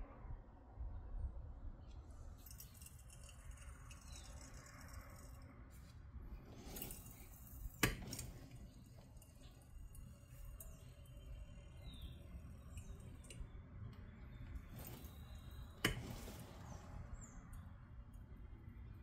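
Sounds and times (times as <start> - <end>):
tools scraping metal parts: 6.4 - 13.4, 14.6 - 16.8.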